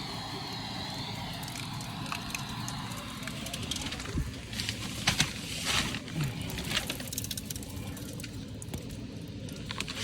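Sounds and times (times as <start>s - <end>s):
vacuum humming: 0.0s - 7.0s
rustling and scraping handling: 3.9s - 7.5s.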